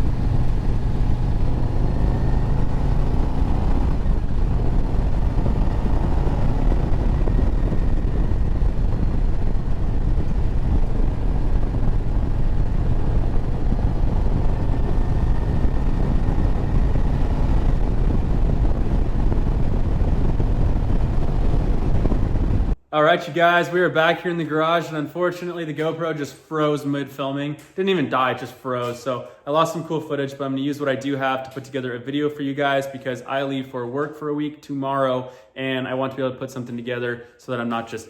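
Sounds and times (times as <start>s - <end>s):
motorcycle engine running: 0.0s - 22.8s
wind and road noise: 0.0s - 22.8s.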